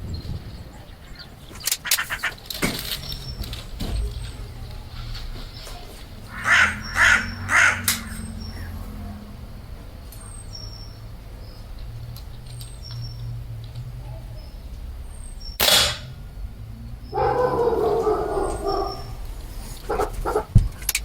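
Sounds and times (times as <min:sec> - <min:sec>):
crow cawing: 0:06.3 - 0:08.8.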